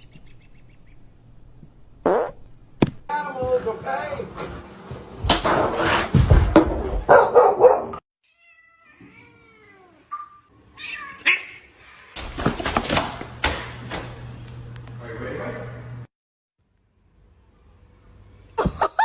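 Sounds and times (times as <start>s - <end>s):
cat meowing: 8.2s - 11.7s.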